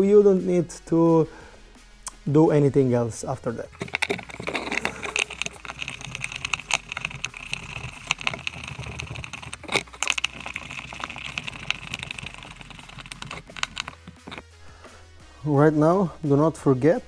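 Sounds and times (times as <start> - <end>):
hand tools clicking and tapping: 3.8 - 14.4.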